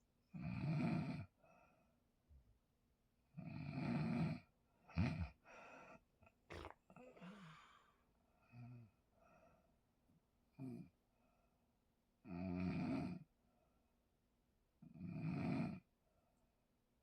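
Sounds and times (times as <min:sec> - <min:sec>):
person snoring heavily: 0:06.5 - 0:07.9.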